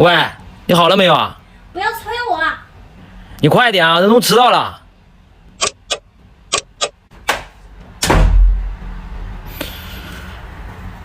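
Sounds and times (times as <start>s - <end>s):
sharp clicks: 5.6s - 7.0s
door slamming shut: 8.0s - 8.6s.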